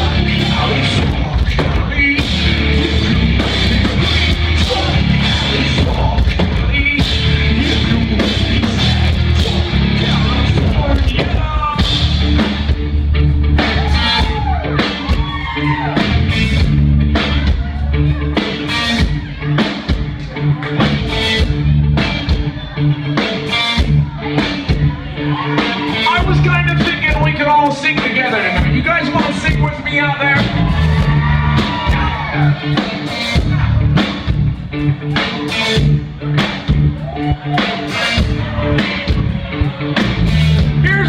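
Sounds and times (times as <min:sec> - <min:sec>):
person singing: 0:00.0 - 0:12.1
live rock band playing: 0:00.0 - 0:41.0.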